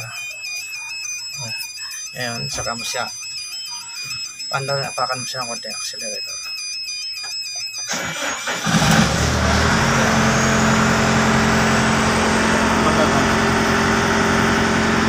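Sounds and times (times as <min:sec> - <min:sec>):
diesel engine cranking and starting: 0:07.8 - 0:15.0.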